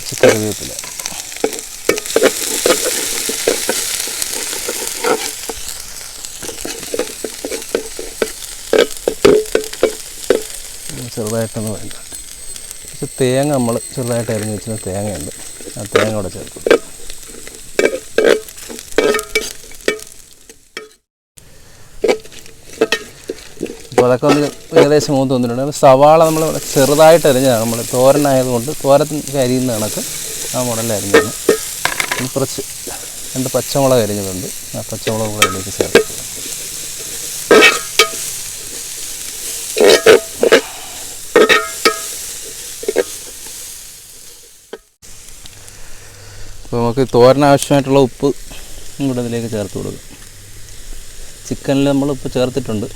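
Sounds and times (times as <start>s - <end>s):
food sizzling in oil: 0.0s - 21.1s, 21.8s - 52.9s
ladle scraping a pan: 0.2s - 10.6s, 15.3s - 20.2s, 22.0s - 25.2s, 26.2s - 43.6s.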